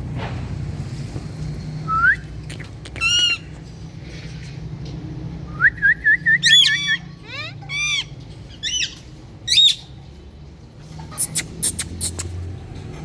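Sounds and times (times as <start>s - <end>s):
parrot squawk: 2.6s - 3.5s, 6.4s - 9.9s, 11.1s - 12.4s
parrot whistling: 5.6s - 9.9s, 11.2s - 12.4s.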